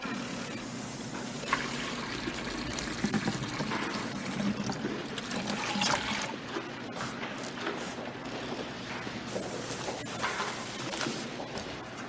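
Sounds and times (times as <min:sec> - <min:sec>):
liquid pouring with splashes: 0:01.5 - 0:06.4.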